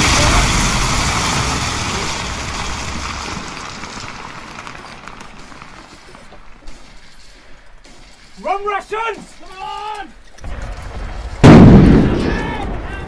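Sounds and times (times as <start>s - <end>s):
rumbling battle noise: 0.0s - 6.4s, 10.4s - 13.0s
faint crackles: 0.0s - 8.6s.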